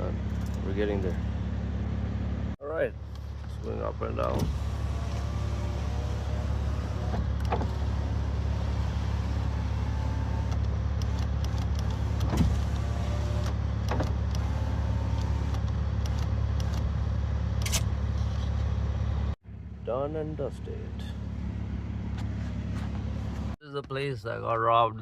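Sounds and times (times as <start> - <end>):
power window motor humming: 4.2 - 16.8.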